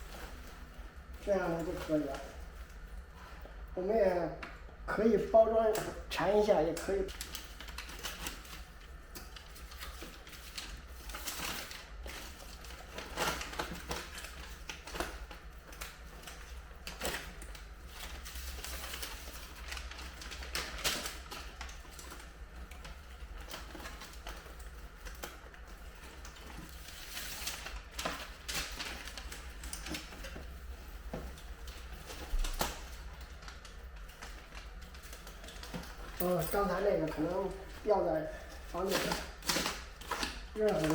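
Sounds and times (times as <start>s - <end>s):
insulation and tape crinkling: 0.0s - 40.9s
low steady hum: 0.0s - 40.9s.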